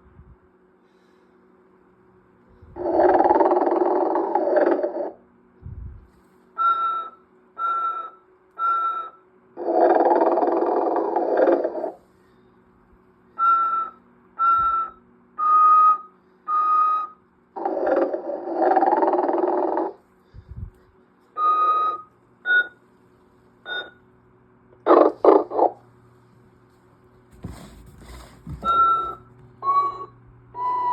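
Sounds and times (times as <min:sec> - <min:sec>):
faint steady hum: 0:00.0 - 0:30.9
toy snoring: 0:02.8 - 0:05.2, 0:09.6 - 0:12.0, 0:17.6 - 0:20.0
short whistled tones: 0:13.4 - 0:17.2.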